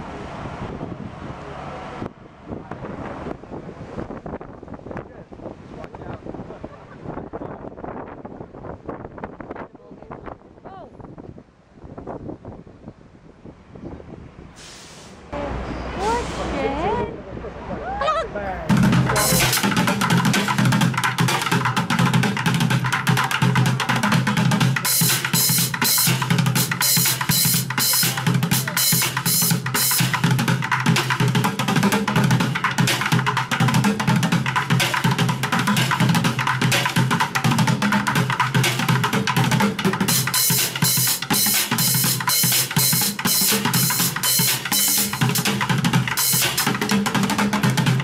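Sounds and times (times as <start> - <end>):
bass drum: 18.7 - 48.0
snare drum: 18.7 - 48.0.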